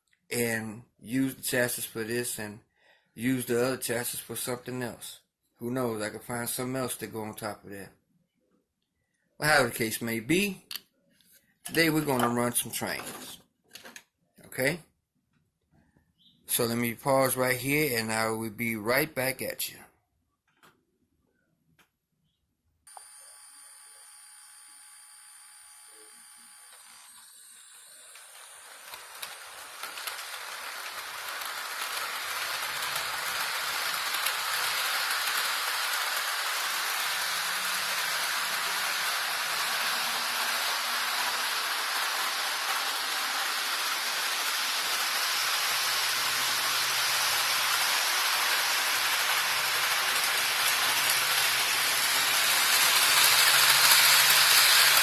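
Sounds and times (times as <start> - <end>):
model trains rushing hiss: 1.2 - 2.4, 26.9 - 55.0.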